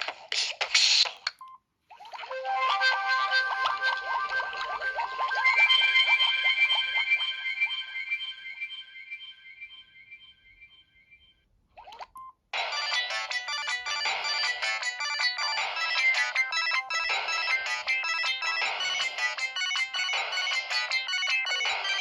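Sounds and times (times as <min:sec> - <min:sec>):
polyphonic phone ringtone: 0:02.3 - 0:08.0, 0:12.6 - 0:22.0.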